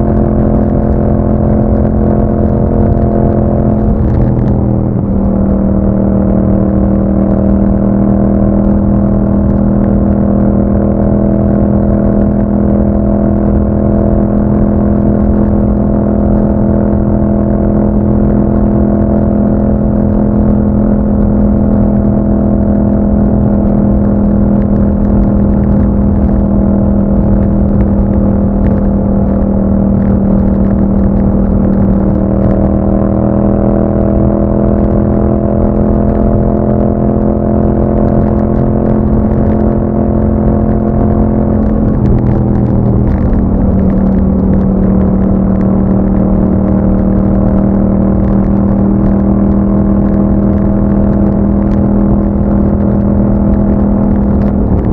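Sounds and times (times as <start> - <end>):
motorcycle engine running: 0.0 - 54.9.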